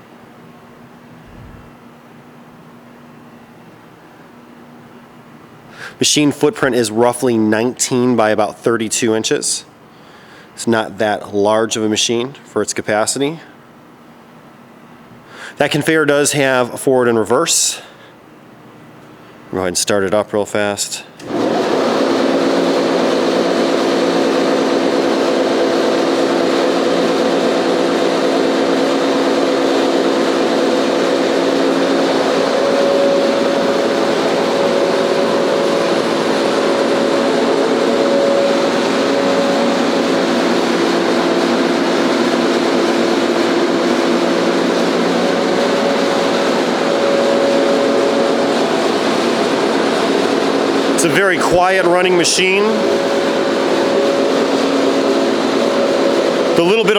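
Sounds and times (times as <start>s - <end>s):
grinder machine humming: 21.2s - 56.9s.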